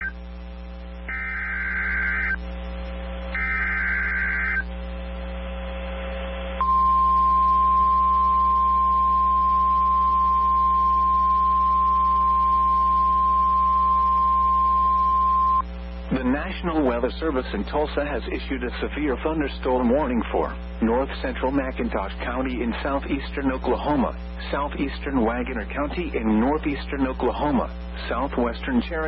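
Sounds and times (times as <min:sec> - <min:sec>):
radio hum and hiss: 0:00.0 - 0:29.0
steady alarm tone: 0:01.0 - 0:02.6, 0:03.3 - 0:04.7, 0:06.6 - 0:15.6
raspy digital data bursts: 0:01.1 - 0:02.6, 0:03.3 - 0:04.7.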